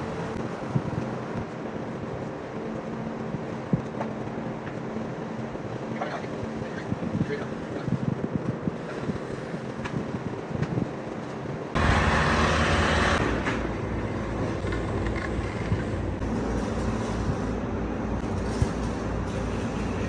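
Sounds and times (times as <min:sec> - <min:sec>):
heavy diesel truck engine: 0:11.8 - 0:18.2.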